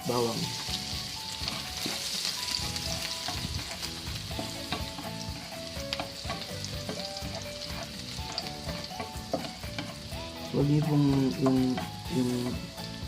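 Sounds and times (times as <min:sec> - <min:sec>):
garlic sizzling in oil: 0:00.0 - 0:13.0
utensil scraping a pan: 0:01.4 - 0:10.0.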